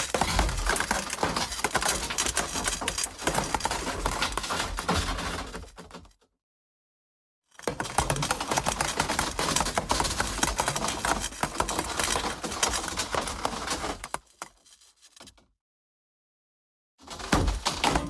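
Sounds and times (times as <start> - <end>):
scraping and grinding with crackles: 0.0 - 6.1, 7.6 - 15.5.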